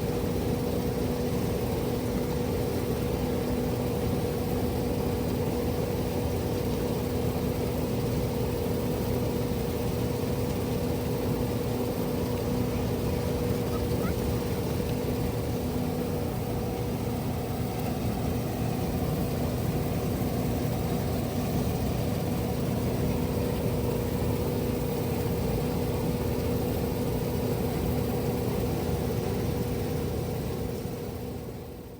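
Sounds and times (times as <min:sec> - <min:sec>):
constant hum: 0:00.0 - 0:31.9.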